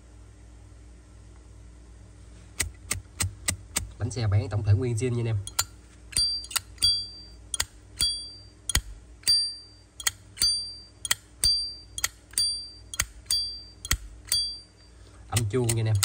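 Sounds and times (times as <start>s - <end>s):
lighter lid clicking open and shut: 7.6s - 9.4s, 10.0s - 14.5s.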